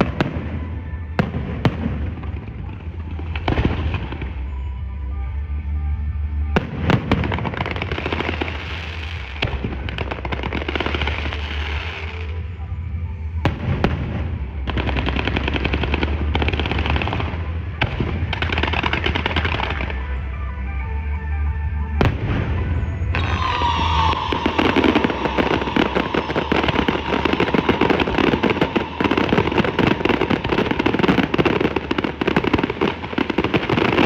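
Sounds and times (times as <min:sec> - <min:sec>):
fireworks crackling: 0:00.0 - 0:04.9, 0:06.2 - 0:20.9, 0:22.0 - 0:34.0
firework bangs: 0:13.4 - 0:20.1, 0:22.0 - 0:34.0.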